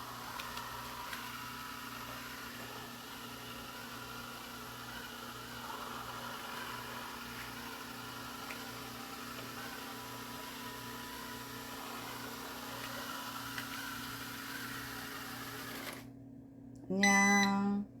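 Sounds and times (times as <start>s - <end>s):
robot vacuum motor hum: 0.0s - 16.1s
loud electronic beep: 17.0s - 17.6s.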